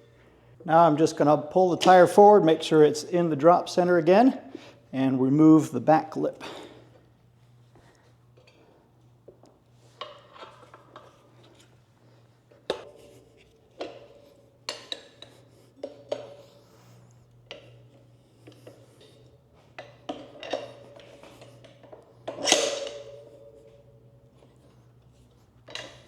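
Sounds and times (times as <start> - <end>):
metal clanks of tire lever: 17.4 - 23.8, 25.6 - 26.0.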